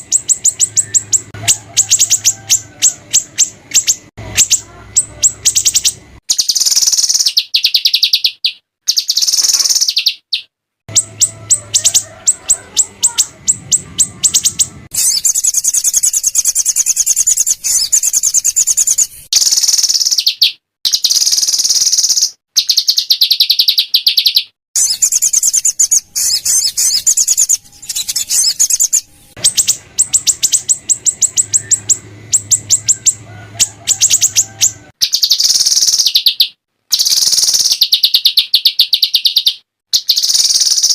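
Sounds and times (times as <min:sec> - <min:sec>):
songbirds trilling sharp chips: 0:00.0 - 0:40.9.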